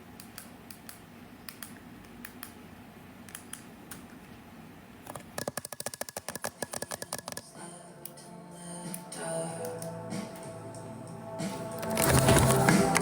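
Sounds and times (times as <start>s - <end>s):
fast run of sharp clicks: 5.0s - 7.4s.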